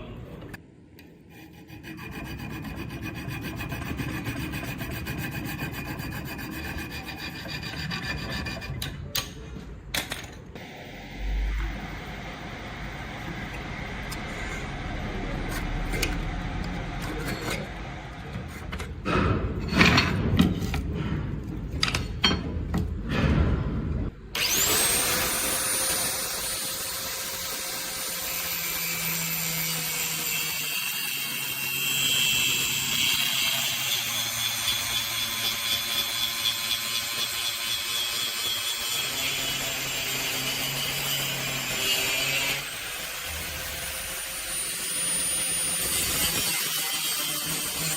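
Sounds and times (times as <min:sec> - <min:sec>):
knocks and scraping: 0:13.4 - 0:24.2
electric grinder grinding: 0:24.4 - 0:47.9.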